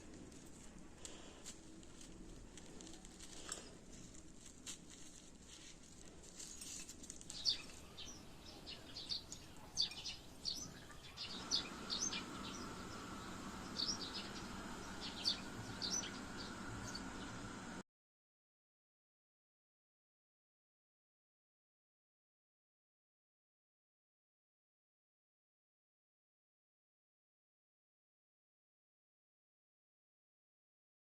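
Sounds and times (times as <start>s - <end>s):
low background hum: 0.0s - 17.8s
small bird chirping: 7.3s - 17.8s.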